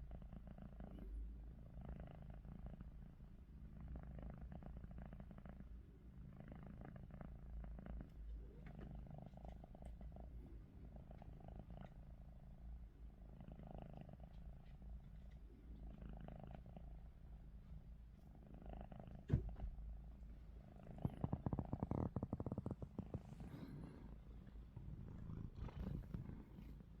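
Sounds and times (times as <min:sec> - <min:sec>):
cat snoring: 0:00.1 - 0:10.2, 0:13.2 - 0:14.3, 0:15.9 - 0:17.0, 0:18.3 - 0:19.3, 0:20.6 - 0:27.0.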